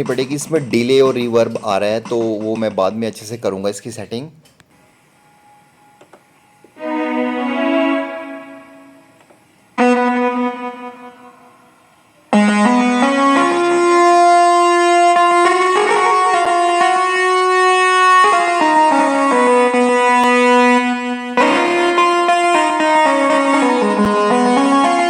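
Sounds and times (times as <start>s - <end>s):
synth keyboard chords: 6.8s - 25.0s.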